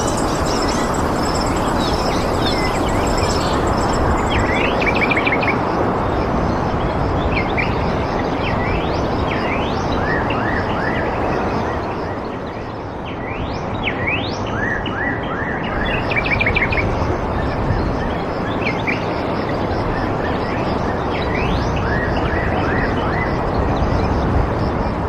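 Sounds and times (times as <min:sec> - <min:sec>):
birds chirping: 0:00.0 - 0:05.2
rushing background noise: 0:00.0 - 0:07.3.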